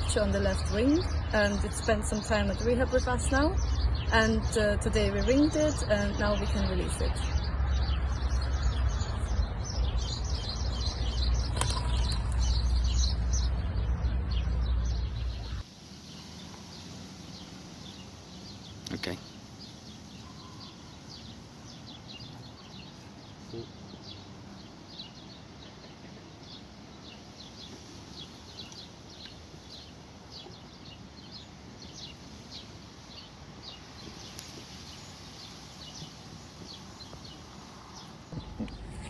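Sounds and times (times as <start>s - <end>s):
faint outdoor hiss: 0.0s - 7.3s, 15.1s - 39.0s
small birds chirping: 0.0s - 39.0s.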